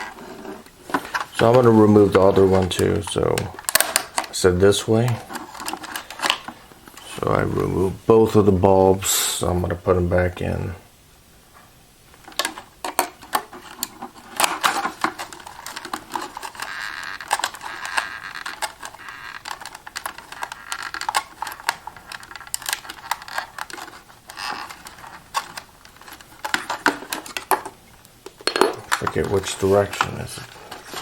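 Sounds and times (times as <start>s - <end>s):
scraping rustle: 0.0s - 8.2s, 28.7s - 31.0s
plastic clicks and knocks: 2.5s - 4.4s, 12.2s - 31.0s.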